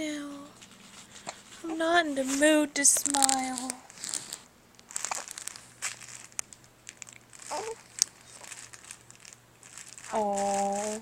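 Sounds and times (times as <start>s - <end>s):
crinkling and rustling: 0.2s - 11.0s
small clicks: 6.2s - 9.4s
baby vocal sound: 7.5s - 8.5s.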